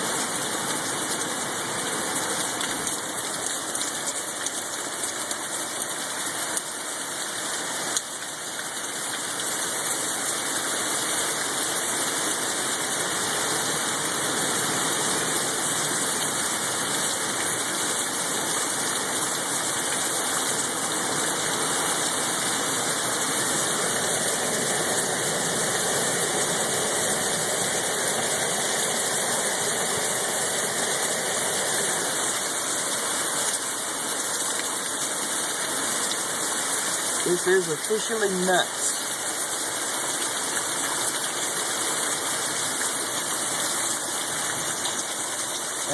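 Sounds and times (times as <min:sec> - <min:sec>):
storm wind roaring: 0:22.2 - 0:32.4.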